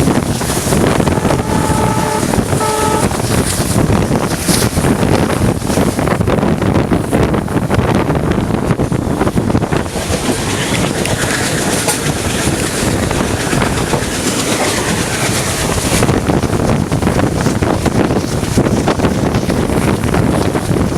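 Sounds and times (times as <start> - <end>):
train wheels clattering: 9.2 - 20.9.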